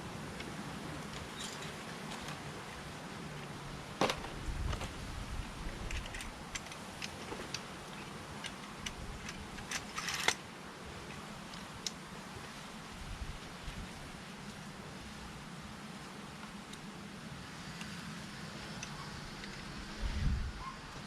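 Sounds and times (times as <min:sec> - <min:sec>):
tripod clicks and knocks: 0:04.0 - 0:05.0, 0:05.8 - 0:10.4.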